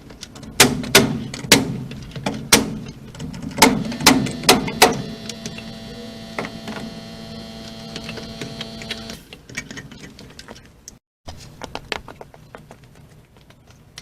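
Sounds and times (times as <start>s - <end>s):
small motor humming: 3.9s - 9.2s.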